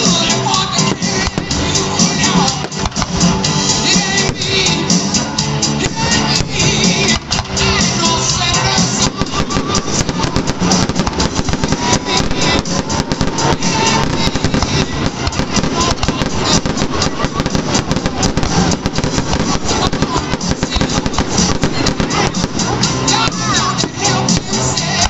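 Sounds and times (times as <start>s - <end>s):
fireworks bangs and crackles: 0.0s - 25.0s
loud music playing: 0.0s - 25.0s.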